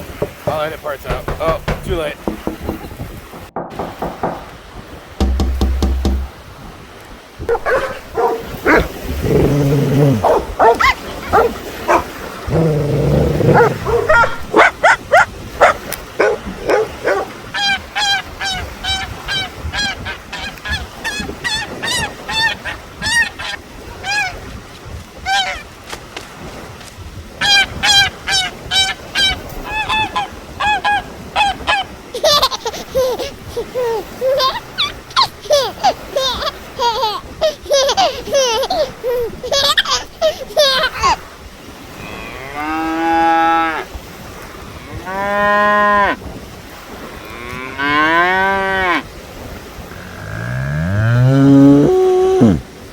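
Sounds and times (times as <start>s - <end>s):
geese honking: 13.6s - 24.4s, 27.4s - 31.9s.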